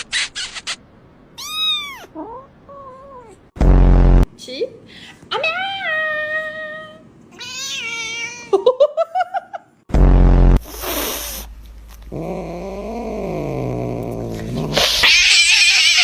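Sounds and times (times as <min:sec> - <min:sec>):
cat meowing: 0:01.4 - 0:03.3, 0:07.3 - 0:08.5, 0:14.7 - 0:16.0
loud low thump: 0:03.6 - 0:04.2
burst of hissy noise: 0:10.6 - 0:11.6.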